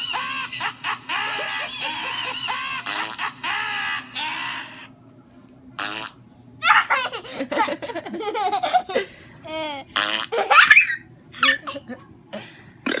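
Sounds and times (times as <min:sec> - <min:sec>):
baby laughing: 0:06.6 - 0:12.0.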